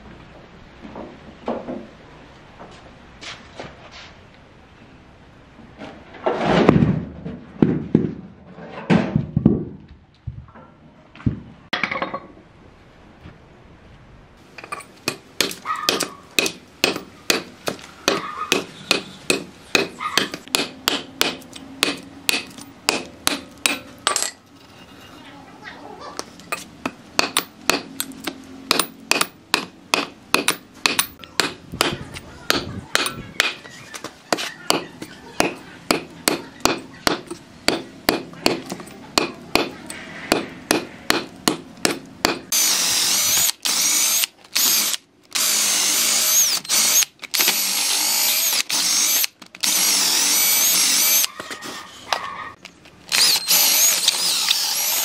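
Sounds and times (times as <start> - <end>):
hammer blows: 34.3 - 42.6.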